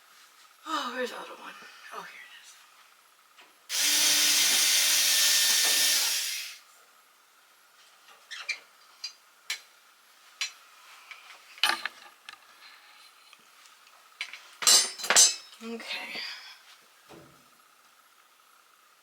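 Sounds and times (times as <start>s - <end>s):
power screwdriver running: 3.7s - 6.6s.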